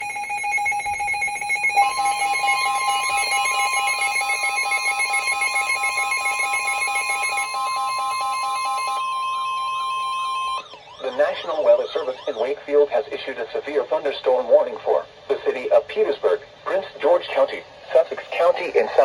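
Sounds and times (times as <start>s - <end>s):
steady high tone: 0.0s - 12.7s.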